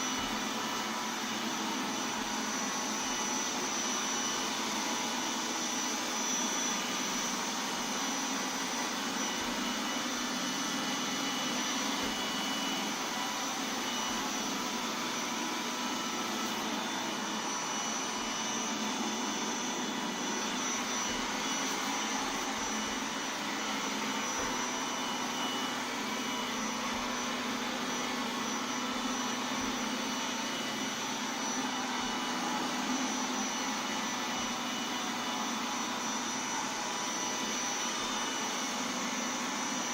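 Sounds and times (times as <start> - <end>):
robot vacuum whirring: 0.0 - 39.9.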